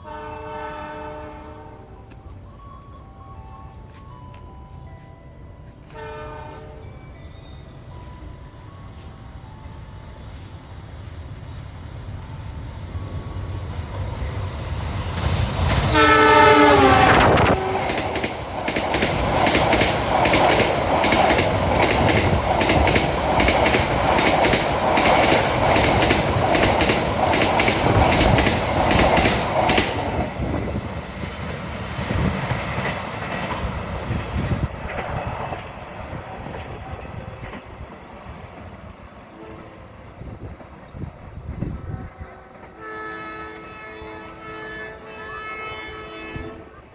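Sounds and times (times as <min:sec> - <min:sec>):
train horn: 0:00.0 - 0:02.1, 0:05.8 - 0:07.2, 0:15.7 - 0:18.4, 0:39.2 - 0:40.4, 0:41.6 - 0:46.9
train rushing by: 0:00.0 - 0:46.9
wheels clacking over rail joints: 0:12.2 - 0:39.2.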